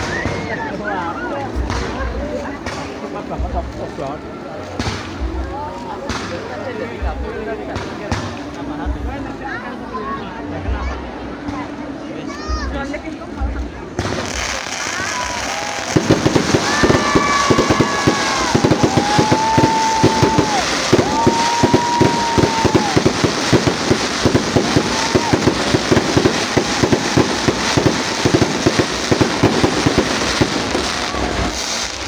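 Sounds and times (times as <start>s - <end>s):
fireworks whistling: 0.0s - 0.9s, 14.0s - 32.0s
firecrackers banging and crackling: 0.0s - 9.2s, 12.5s - 32.0s.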